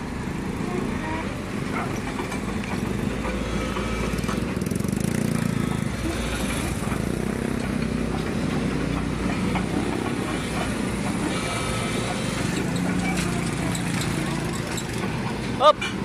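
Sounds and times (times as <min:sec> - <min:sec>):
excavator diesel engine running: 0:00.0 - 0:16.0
faint clanks: 0:05.8 - 0:16.0.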